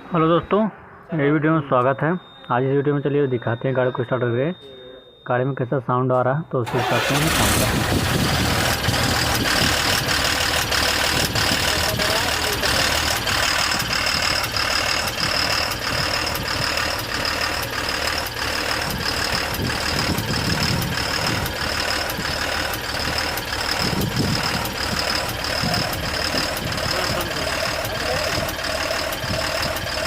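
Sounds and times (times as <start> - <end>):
diesel engine idling: 6.6 - 30.0
sharp engine ticking: 6.6 - 30.0.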